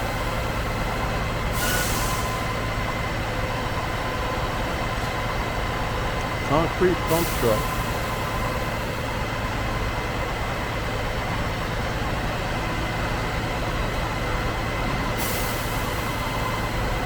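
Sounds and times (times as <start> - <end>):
diesel engine running with whine: 0.0 - 17.0.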